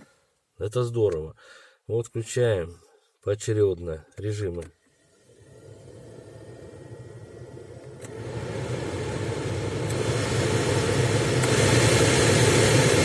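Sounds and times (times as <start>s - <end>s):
heater blower fan running: 5.2s - 13.0s.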